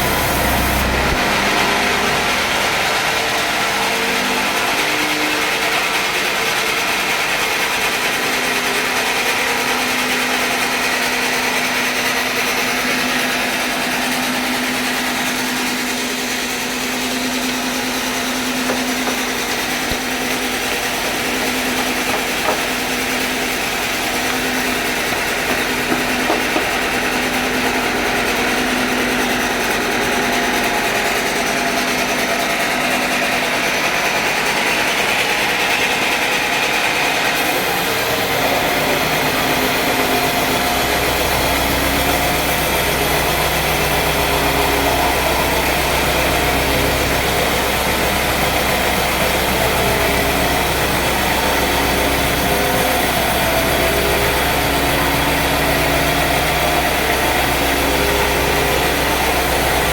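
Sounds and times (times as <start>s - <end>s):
sawmill machinery droning: 0.0s - 59.9s.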